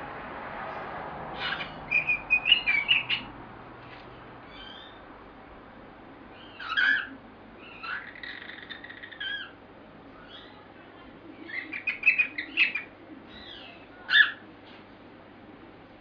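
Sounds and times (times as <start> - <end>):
bird chattering chirps: 1.4 - 3.3, 6.4 - 9.6, 11.4 - 14.4
bird whistling: 1.4 - 3.3, 11.5 - 14.4.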